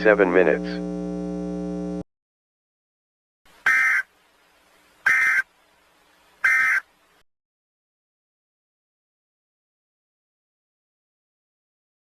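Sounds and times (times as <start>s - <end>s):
faint hiss: 3.5s - 7.2s.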